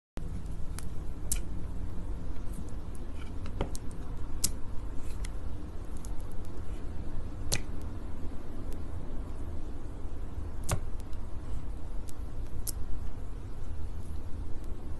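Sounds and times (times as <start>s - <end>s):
steady low rumble: 0.2s - 14.9s
sticky honey clicks: 0.7s - 1.6s, 2.4s - 6.6s, 7.4s - 7.9s.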